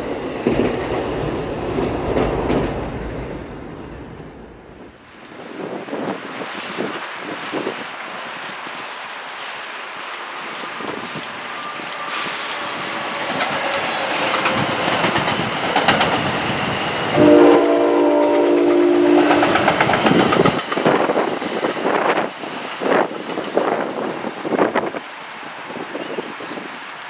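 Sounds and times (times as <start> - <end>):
train wheels clicking over rail joints: 0.0 - 3.7, 10.4 - 25.0
train air horn blast: 17.1 - 19.9.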